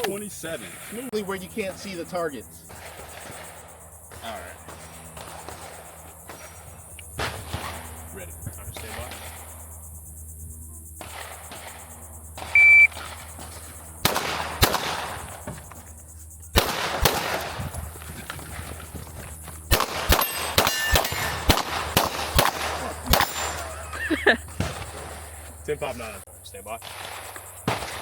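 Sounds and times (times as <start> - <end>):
shot timer beep: 12.5 - 13.0
pistol shots: 14.0 - 15.2, 16.6 - 17.6, 19.7 - 23.7, 26.8 - 28.0
steel targets ringing: 20.1 - 21.5.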